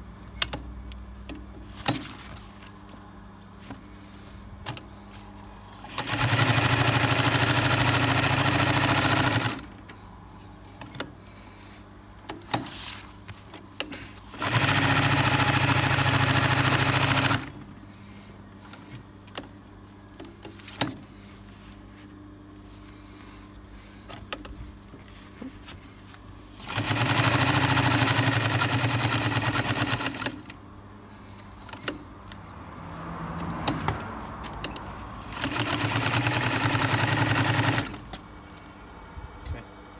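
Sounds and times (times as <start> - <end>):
sewing machine stitching leather: 5.9 - 9.7, 13.9 - 17.7, 26.6 - 30.6, 34.6 - 38.2.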